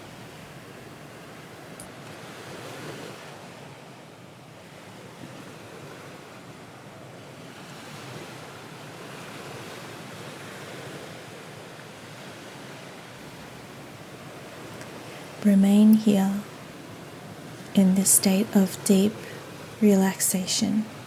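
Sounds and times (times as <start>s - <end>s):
ocean waves washing on shore: 0.0s - 21.0s.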